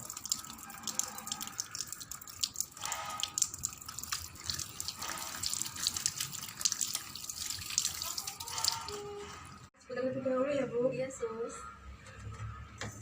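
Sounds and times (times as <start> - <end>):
tap water running into sink: 0.0 - 9.1.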